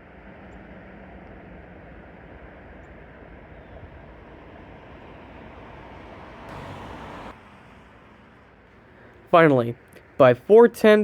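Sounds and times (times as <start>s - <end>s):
road traffic hum: 0.0s - 11.0s.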